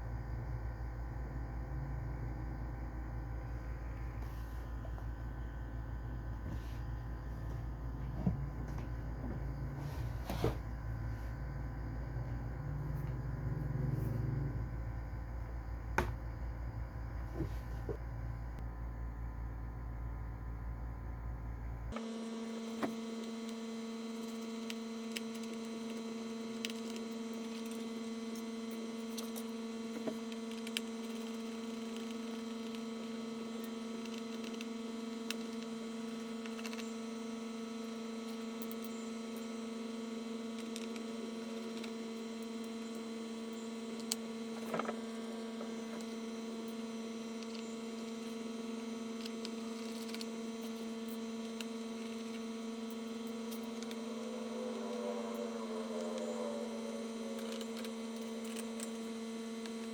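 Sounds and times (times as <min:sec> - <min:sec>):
steady electrical hum: 0:00.0 - 0:59.9.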